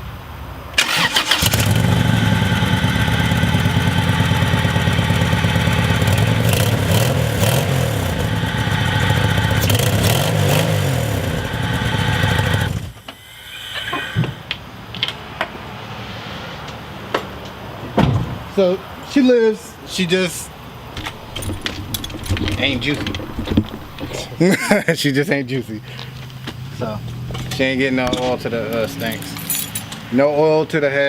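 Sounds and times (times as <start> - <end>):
engine cranking and idling roughly: 0.8 - 13.0, 20.8 - 25.0.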